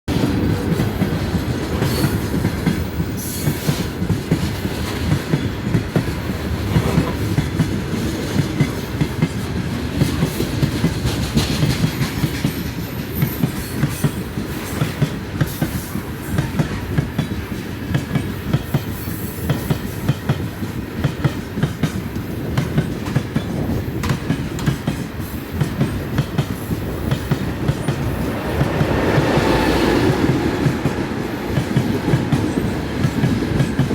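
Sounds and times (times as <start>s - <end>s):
low train rumble: 0.1s - 33.9s
train wheels clattering: 0.1s - 33.9s.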